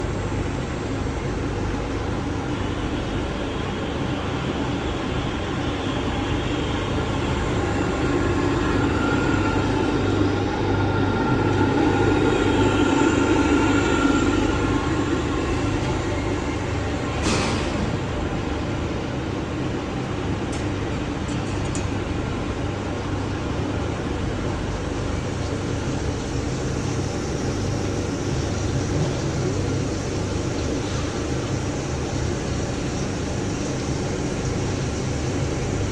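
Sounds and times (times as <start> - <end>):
faint machine whine: 0.0 - 35.9
lathe running: 5.4 - 17.2.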